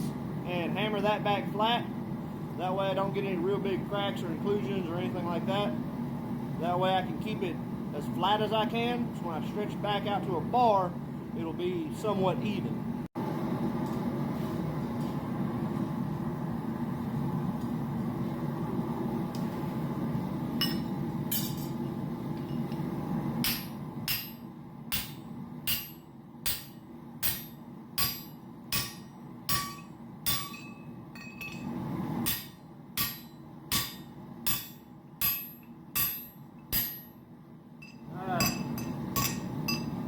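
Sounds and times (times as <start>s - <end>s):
hammer striking metal on anvil: 20.6s - 21.8s, 23.4s - 37.2s, 37.8s - 40.0s.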